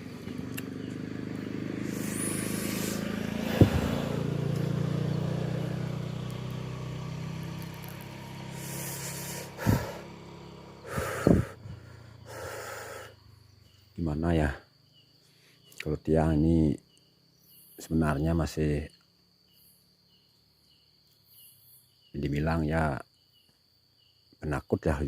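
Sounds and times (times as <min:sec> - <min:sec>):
vehicle passing: 0:00.0 - 0:13.5.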